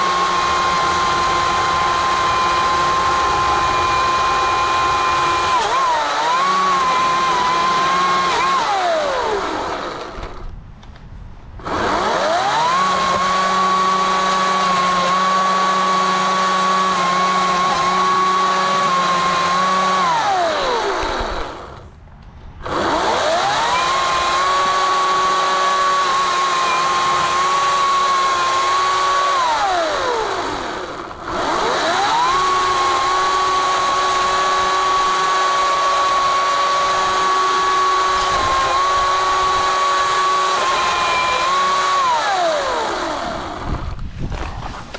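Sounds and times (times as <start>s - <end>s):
electric chainsaw whine: 0.0s - 10.5s, 11.6s - 21.9s, 22.6s - 44.0s.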